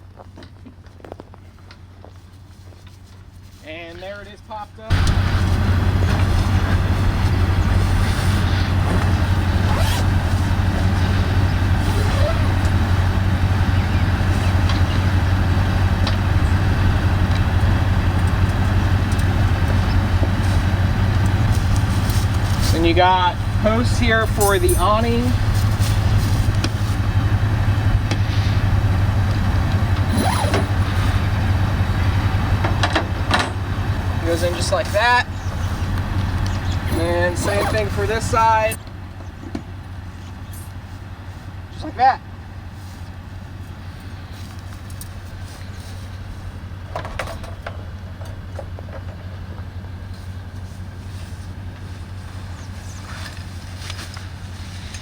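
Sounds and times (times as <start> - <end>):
vehicle engine idling: 1.4 - 55.0.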